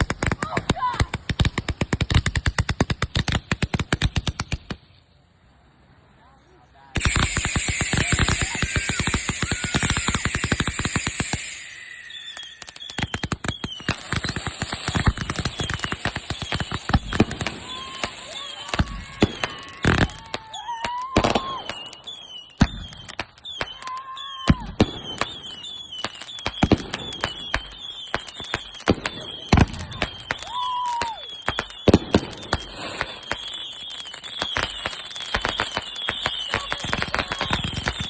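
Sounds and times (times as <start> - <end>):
fireworks bangs and crackles: 0.0 - 5.0, 6.8 - 38.0
high chirps: 7.0 - 19.7
firework whistles: 7.0 - 38.0.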